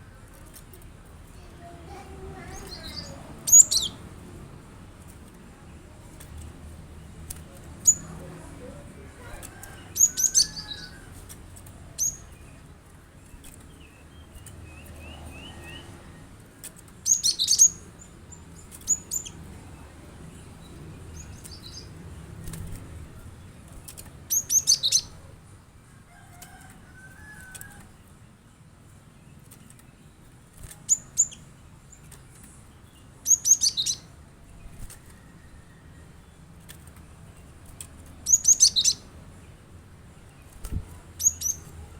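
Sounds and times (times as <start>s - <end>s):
soft bird chattering: 0.2s - 4.2s, 7.7s - 11.1s, 17.0s - 22.0s, 24.3s - 25.4s, 38.2s - 39.1s, 40.4s - 41.9s.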